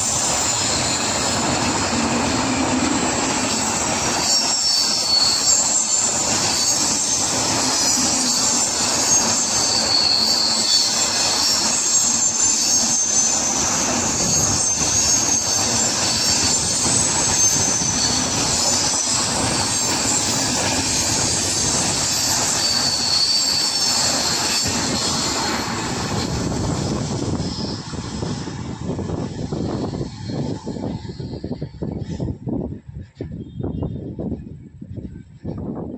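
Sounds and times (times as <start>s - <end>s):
wheel squeal: 0.0s - 32.3s
clickety-clack of train wheels: 0.0s - 35.9s
train wheels rumbling on rails: 0.0s - 35.9s.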